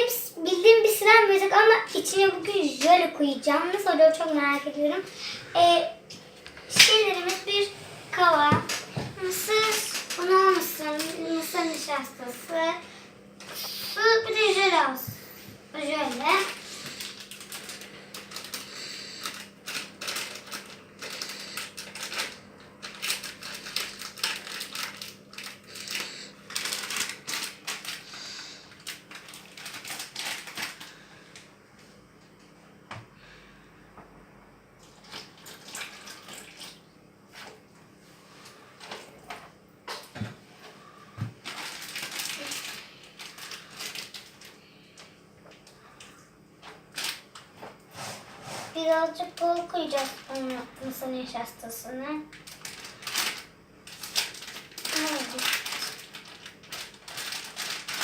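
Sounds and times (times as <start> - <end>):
faint steady hum: 0.0 - 58.0
packets rustling and scraping: 15.3 - 31.0, 41.3 - 44.6, 52.5 - 58.0.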